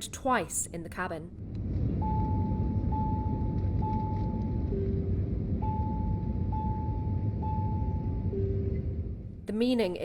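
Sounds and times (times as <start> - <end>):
cabin rumble in flight: 0.8 - 10.0
airliner cabin chime: 2.0 - 9.3.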